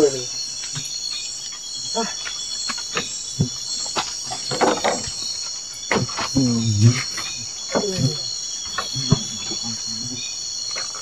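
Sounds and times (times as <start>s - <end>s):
crickets and insects chirring: 0.0s - 11.0s.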